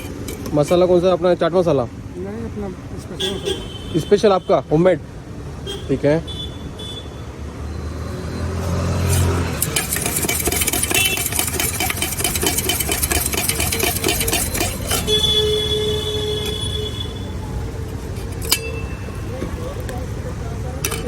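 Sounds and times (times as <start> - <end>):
street traffic: 0.0 - 21.0
rapid metal clatter: 9.2 - 15.4.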